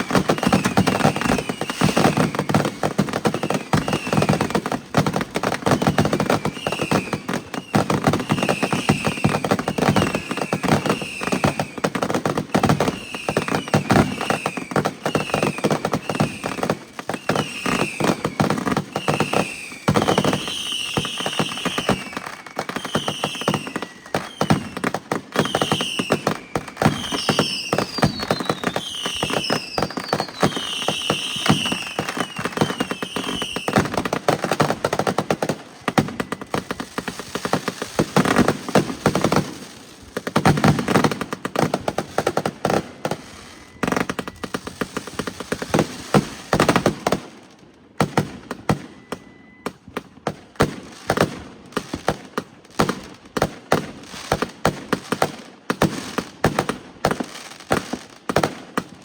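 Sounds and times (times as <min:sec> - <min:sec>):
fireworks bangs and crackling: 0:00.0 - 0:59.0.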